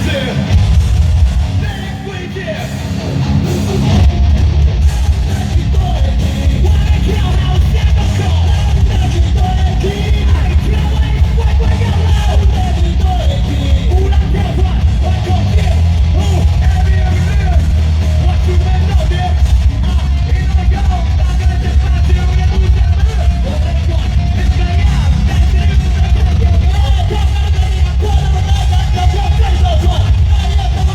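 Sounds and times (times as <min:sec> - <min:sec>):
heavy metal band playing: 0:00.0 - 0:30.9
yelled vocals: 0:00.0 - 0:30.9.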